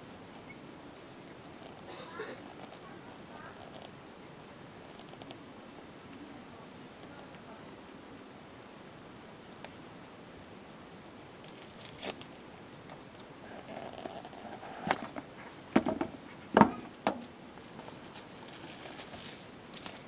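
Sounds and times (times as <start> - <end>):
packaging rustle: 11.4 - 15.2, 17.7 - 20.0.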